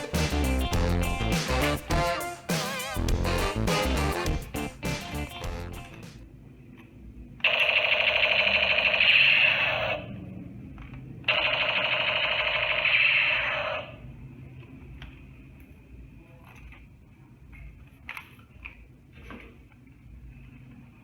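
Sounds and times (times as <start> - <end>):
toy gun electronic firing sound: 7.4 - 10.1, 11.3 - 14.0.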